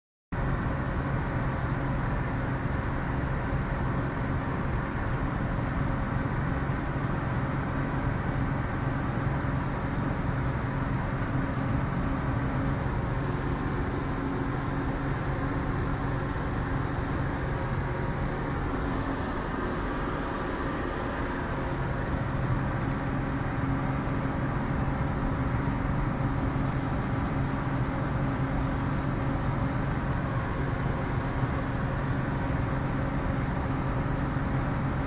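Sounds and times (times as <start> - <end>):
vehicle engine humming: 10.9 - 32.6.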